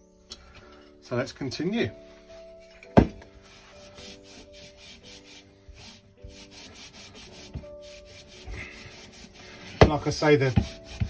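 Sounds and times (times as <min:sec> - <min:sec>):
soft background music: 0:00.0 - 0:11.0
hand rubbing paste on metal: 0:02.6 - 0:11.0.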